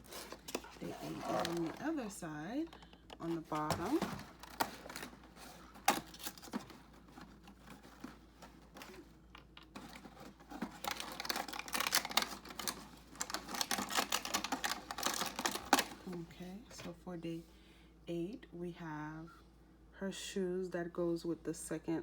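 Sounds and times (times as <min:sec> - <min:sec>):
wrapper crinkling: 0:00.0 - 0:16.2
cardboard and plastic clicking: 0:02.6 - 0:16.2.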